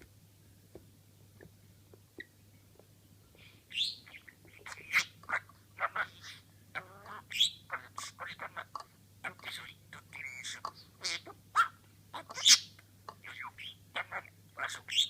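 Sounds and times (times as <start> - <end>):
budgerigar chattering and warbling: 3.7 - 15.0.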